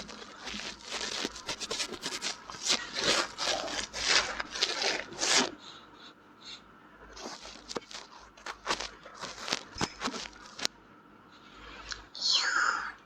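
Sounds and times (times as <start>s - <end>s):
tool scratching at ear: 0.0s - 5.6s.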